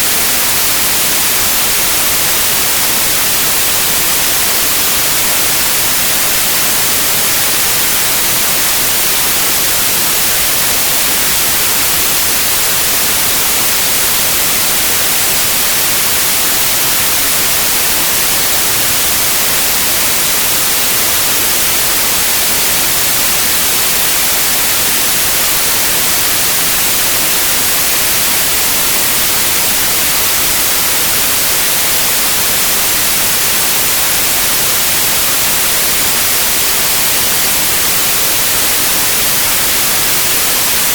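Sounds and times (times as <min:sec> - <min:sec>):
white noise hiss: 0:00.0 - 0:40.9.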